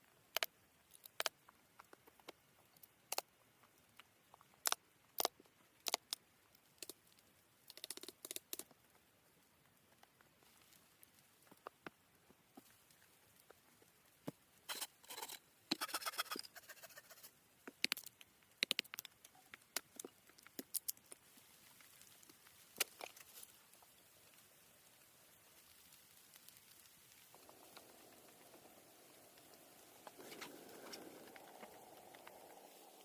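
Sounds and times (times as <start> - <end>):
rustling: 19.5 - 33.0.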